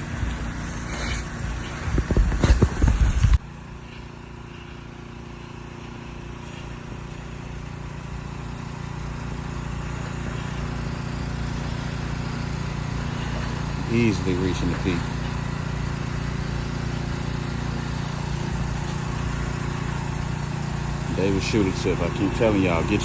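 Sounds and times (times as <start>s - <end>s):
pressure washer engine running: 0.0s - 23.0s.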